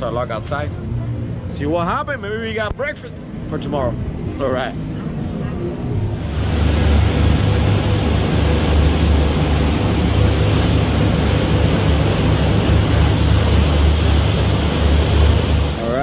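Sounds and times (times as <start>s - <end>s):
motorboat engine drone: 6.0s - 16.0s
rush of wind and water: 6.0s - 16.0s.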